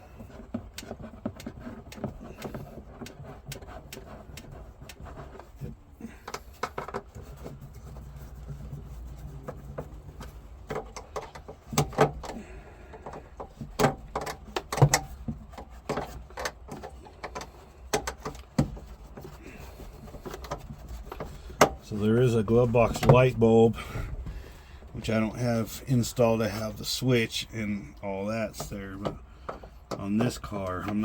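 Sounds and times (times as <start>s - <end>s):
low steady hum: 0.0s - 31.0s
car glove box clicks and rattles: 9.8s - 12.4s, 13.0s - 19.2s.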